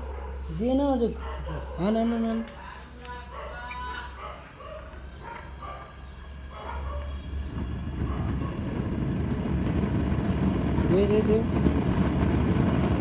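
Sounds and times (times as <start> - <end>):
burner flame rumble: 5.1 - 13.0.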